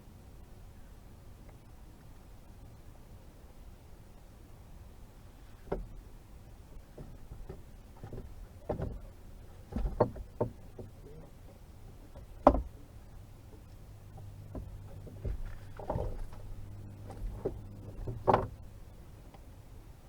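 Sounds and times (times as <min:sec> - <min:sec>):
low steady hum: 0:00.0 - 0:20.0
knocks and clunks: 0:06.8 - 0:18.8.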